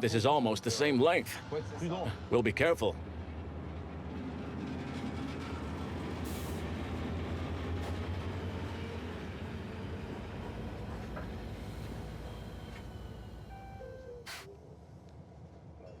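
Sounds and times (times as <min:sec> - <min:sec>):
train rumbling: 0:00.0 - 0:15.9
brief hiss: 0:14.2 - 0:14.5.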